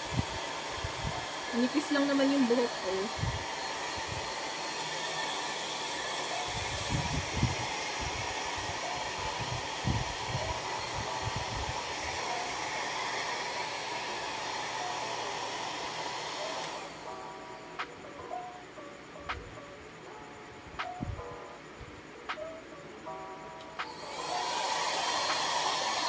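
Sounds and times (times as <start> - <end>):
hair dryer blowing: 0.0 - 17.2, 23.8 - 26.0.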